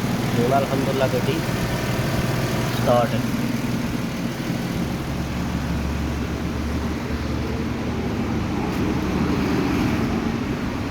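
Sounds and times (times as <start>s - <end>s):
car engine idling: 0.0s - 8.6s.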